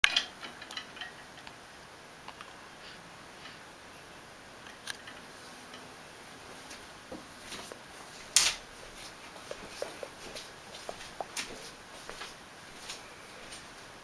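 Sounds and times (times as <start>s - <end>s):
faint clicks and ticks: 6.7s - 13.7s.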